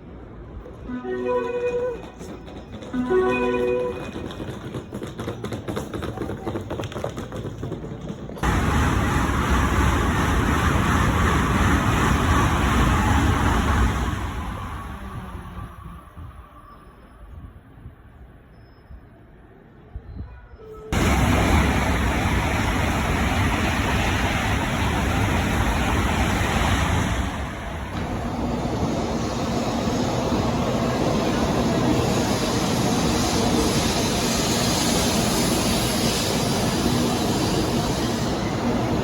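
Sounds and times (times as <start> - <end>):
train rushing past: 8.4 - 18.2, 20.7 - 39.0.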